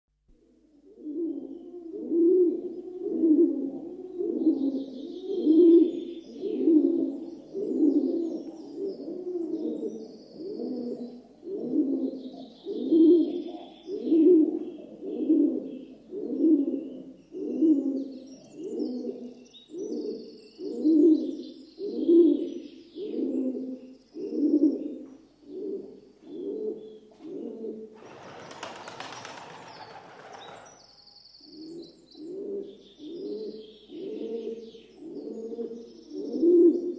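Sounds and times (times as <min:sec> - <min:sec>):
dove cooing: 0:00.9 - 0:30.8, 0:31.7 - 0:36.9.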